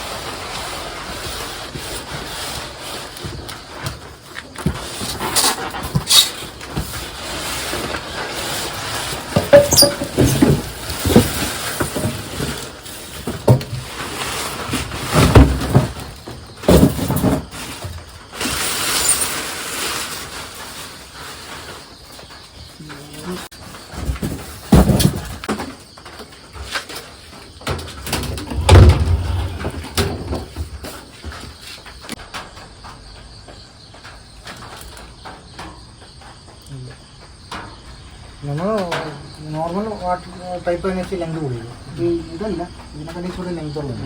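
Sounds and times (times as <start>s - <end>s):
knocks and clatter of handled things: 0.0s - 40.4s
high squeak: 9.5s - 10.6s.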